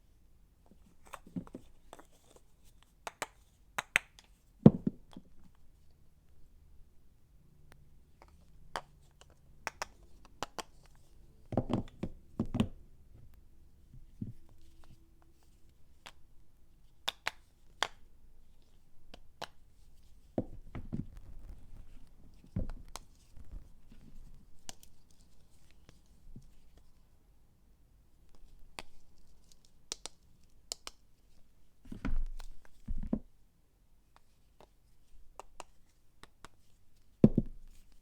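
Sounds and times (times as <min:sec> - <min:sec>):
soap bars clicking and tapping: 0:03.0 - 0:05.3, 0:08.2 - 0:10.9, 0:17.0 - 0:18.1, 0:29.9 - 0:31.0.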